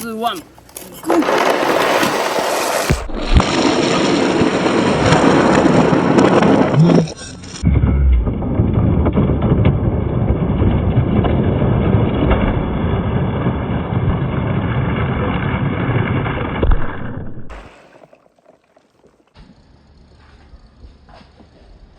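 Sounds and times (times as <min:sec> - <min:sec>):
marbles rolling on wooden tracks: 0:00.8 - 0:07.6
marbles splashing into water: 0:01.0 - 0:07.3, 0:17.5 - 0:19.4.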